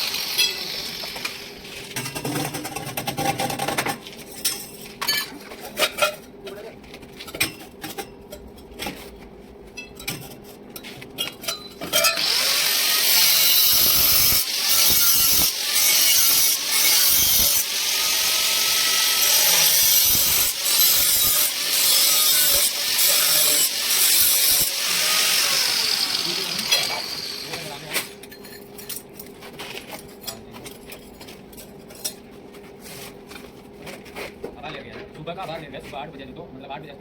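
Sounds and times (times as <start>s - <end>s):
power tool harsh hiss: 0.0s - 1.6s, 12.2s - 28.0s.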